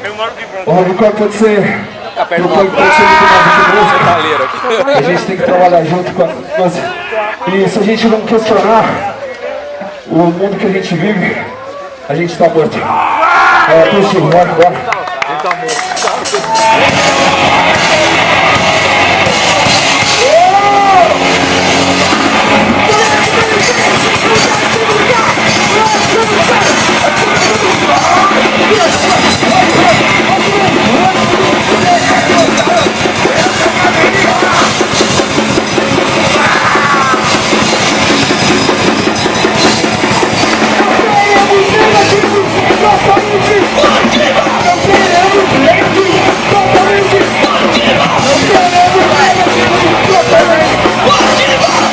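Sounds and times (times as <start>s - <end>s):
distorted electric guitar: 0.0s - 9.1s, 15.7s - 51.9s
shouted vocals: 2.5s - 4.8s, 12.8s - 14.1s, 16.0s - 35.1s, 36.1s - 37.5s, 40.1s - 51.9s
drum kit: 15.6s - 51.9s.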